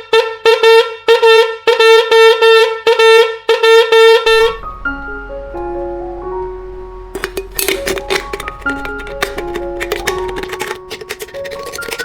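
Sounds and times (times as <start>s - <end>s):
background music: 4.3s - 12.0s
homemade horn tooting: 7.2s - 12.0s.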